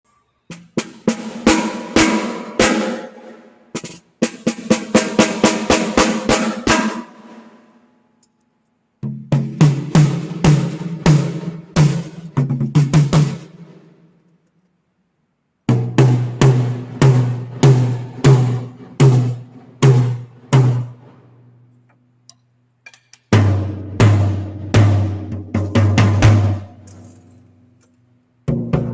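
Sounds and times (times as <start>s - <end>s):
drums struck and ringing: 0.5s - 7.6s, 9.0s - 13.8s, 15.7s - 21.2s, 22.9s - 26.9s.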